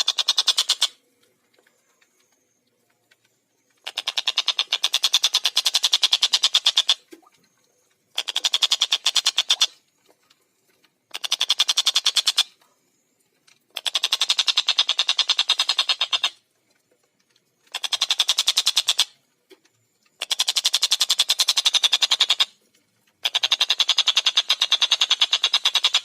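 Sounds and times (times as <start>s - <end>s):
kingfisher rattling cackles: 0.0s - 1.0s, 3.8s - 7.1s, 8.1s - 9.7s, 11.1s - 12.5s, 13.7s - 16.4s, 17.7s - 19.2s, 20.2s - 22.6s, 23.2s - 26.0s.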